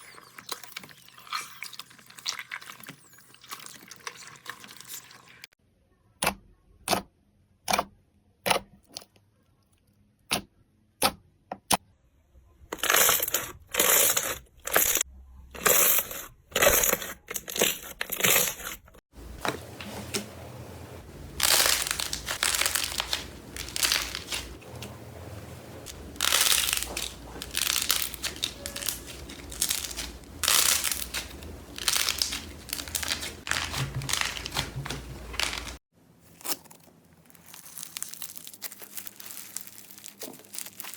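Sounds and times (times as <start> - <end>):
slime squishing: 20.8 - 40.9
crunchy slime crackling: 21.1 - 25.0, 25.7 - 40.9.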